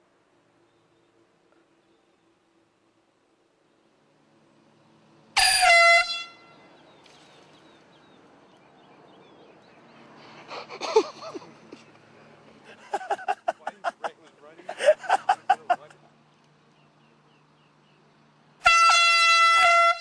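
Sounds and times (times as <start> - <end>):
handheld air horn blast: 5.4 - 6.6, 18.6 - 20.0.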